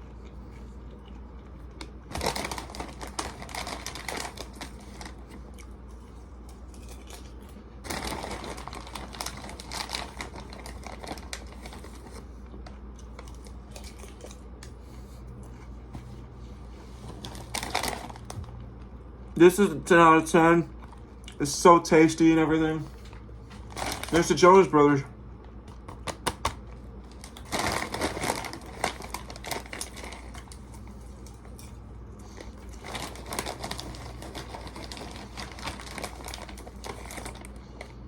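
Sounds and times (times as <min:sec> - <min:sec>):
popcorn bag crinkling: 0:01.8 - 0:05.7, 0:06.6 - 0:14.4, 0:17.1 - 0:18.4, 0:23.5 - 0:24.8, 0:27.0 - 0:38.0.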